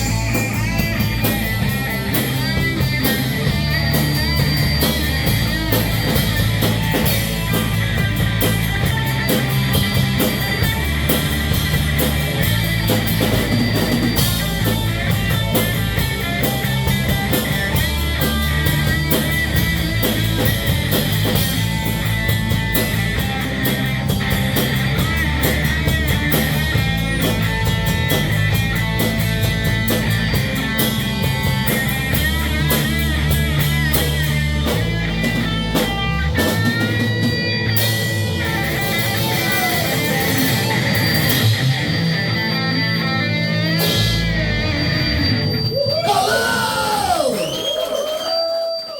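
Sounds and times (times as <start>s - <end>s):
distorted electric guitar: 0.0s - 47.2s
bass guitar: 0.0s - 47.8s
drum kit: 0.0s - 48.0s.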